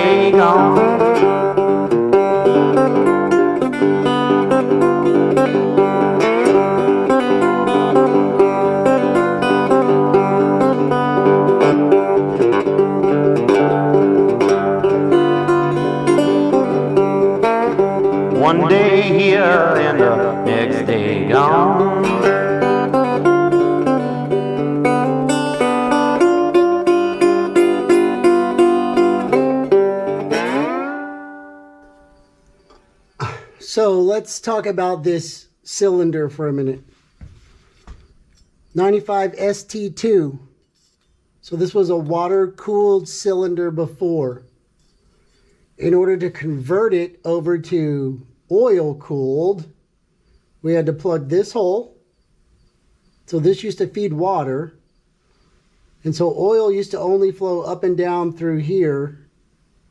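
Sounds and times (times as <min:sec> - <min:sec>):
blues guitar picking: 0:00.0 - 0:32.3.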